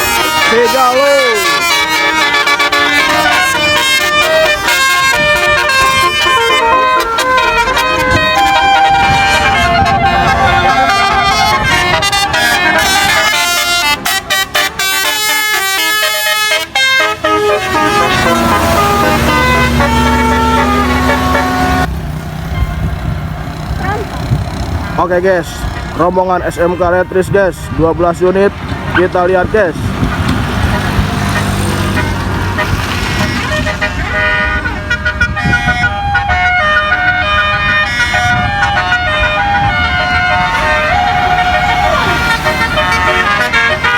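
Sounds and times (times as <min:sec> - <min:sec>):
multi-tone air horn melody: 0:00.0 - 0:21.9, 0:30.7 - 0:43.9
bus engine running: 0:00.0 - 0:43.9.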